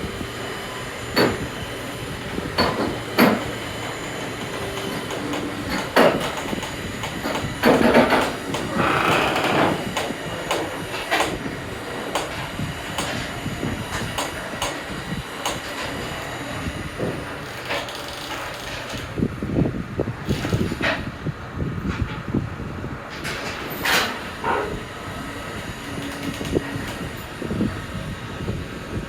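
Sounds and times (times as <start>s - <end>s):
flatbed trailer rattling and clanking: 0.0s - 19.4s
rumble of moving truck: 0.0s - 29.0s.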